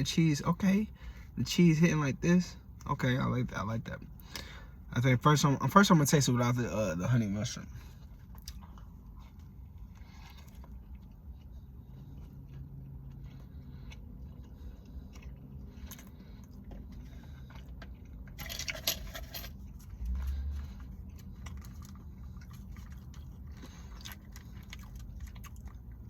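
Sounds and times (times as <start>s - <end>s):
person chewing: 7.8s - 18.4s, 19.6s - 26.0s.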